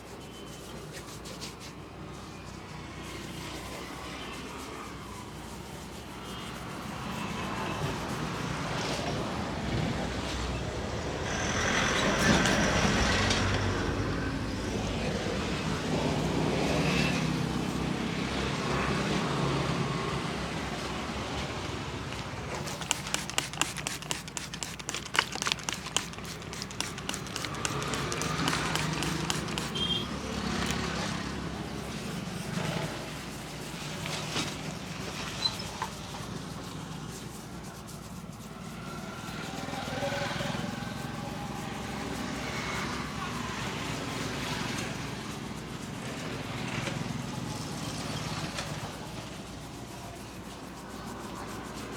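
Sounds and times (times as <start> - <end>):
road traffic passing: 1.6 - 51.9
hands slapping a head: 22.8 - 29.8.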